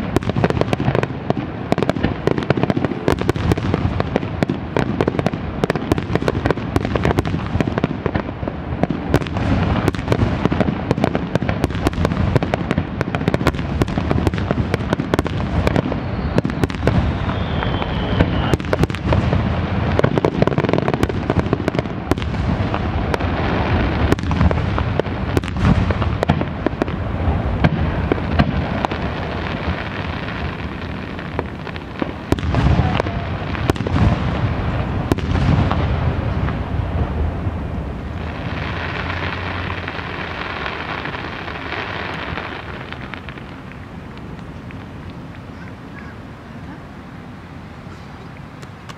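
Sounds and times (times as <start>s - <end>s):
fireworks bursts and crackling: 0.0s - 47.0s
falling firework whistle: 13.4s - 19.4s, 27.6s - 37.1s.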